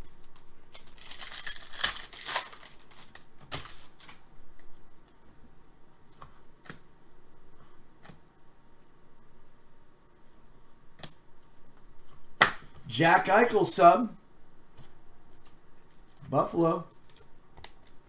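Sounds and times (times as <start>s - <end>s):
foil wrapper tearing and crinkling: 0.3s - 4.2s.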